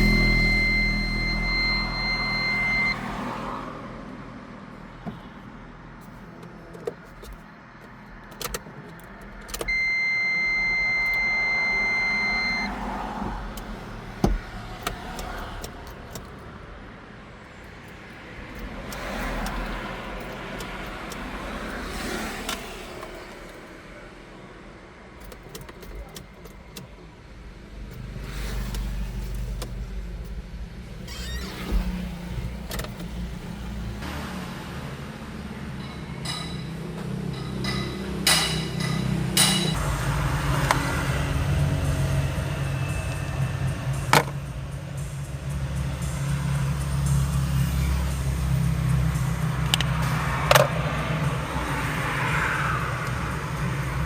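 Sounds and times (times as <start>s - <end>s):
high electronic beep: 0.0s - 3.1s, 9.7s - 12.8s
clicks and handling noises: 6.0s - 9.8s, 17.7s - 23.6s, 25.2s - 27.0s.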